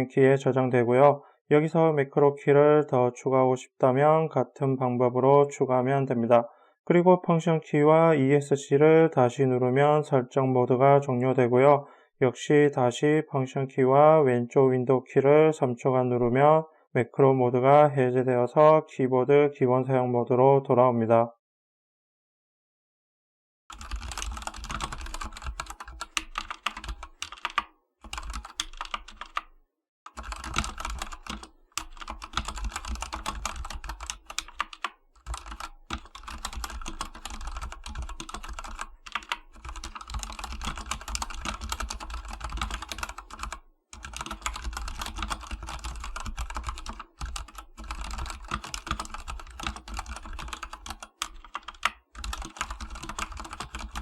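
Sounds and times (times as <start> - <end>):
fast typing on mechanical keyboard: 23.7 - 29.5, 30.1 - 54.0.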